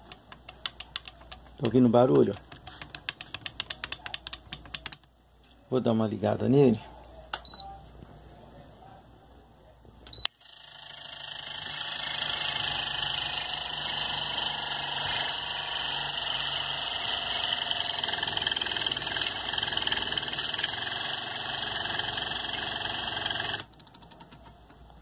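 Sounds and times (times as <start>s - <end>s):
electric fan motor rattling: 10.4s - 24.6s.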